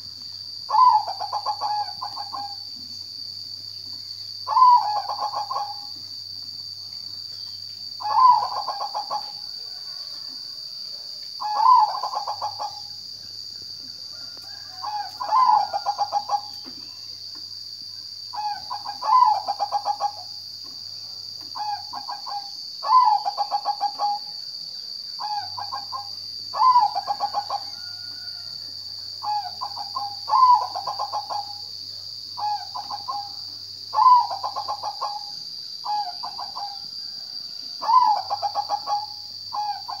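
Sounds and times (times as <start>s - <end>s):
dove cooing song: 0.6s - 2.7s, 4.5s - 6.0s, 8.0s - 9.4s, 11.4s - 12.9s, 14.5s - 16.7s, 18.3s - 20.3s, 21.6s - 24.3s, 25.2s - 28.0s, 29.2s - 31.7s, 32.4s - 37.0s, 37.8s - 40.0s.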